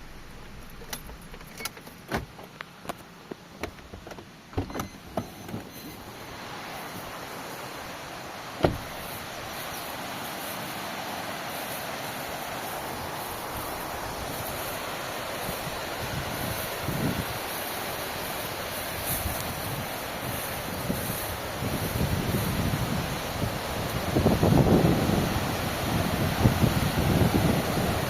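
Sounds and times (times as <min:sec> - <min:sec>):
sharp clicks and knocks: 0:00.4 - 0:05.7
waterfall rushing: 0:06.0 - 0:28.0
loud thump: 0:08.6 - 0:08.9.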